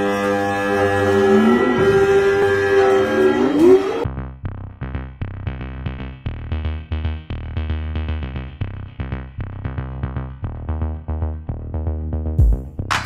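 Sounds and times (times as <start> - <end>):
synthesizer notes: 0.0 - 4.1
drum-machine beat: 12.4 - 13.0.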